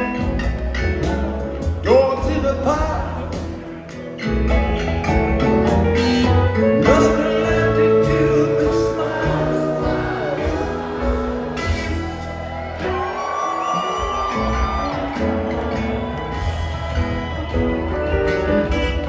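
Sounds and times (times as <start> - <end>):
live rock band playing: 0.0 - 19.0
person singing: 6.0 - 12.2.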